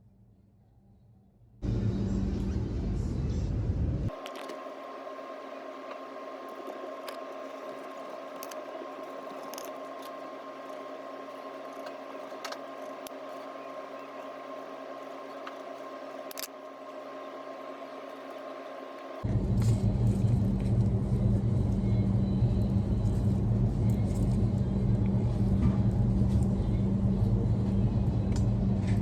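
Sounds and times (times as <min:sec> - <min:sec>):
machine hum with tones: 0:00.0 - 0:29.0.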